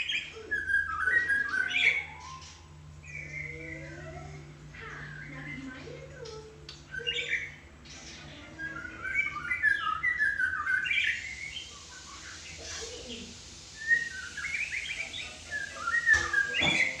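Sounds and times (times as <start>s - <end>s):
bird singing whistled phrases: 0.0s - 3.9s, 8.6s - 12.9s, 13.7s - 17.0s.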